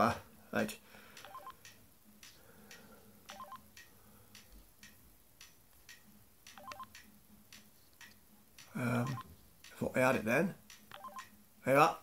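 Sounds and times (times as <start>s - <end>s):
short keypad beeps: 3.3s - 3.6s, 6.6s - 6.9s, 10.9s - 11.3s.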